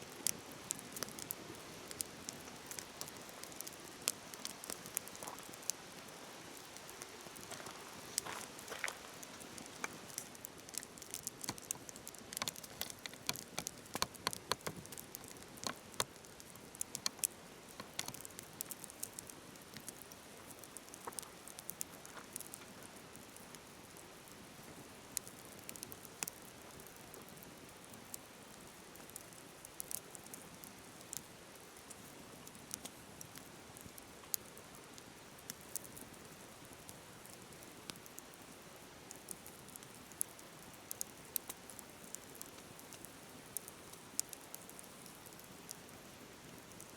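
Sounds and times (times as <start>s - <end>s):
flowing river hiss: 0.0s - 14.0s
wood fire crackling: 0.0s - 46.9s.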